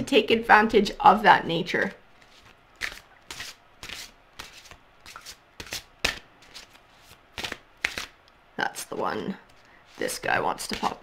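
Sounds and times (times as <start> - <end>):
cards being shuffled by hand: 2.2 - 8.2, 9.4 - 11.0.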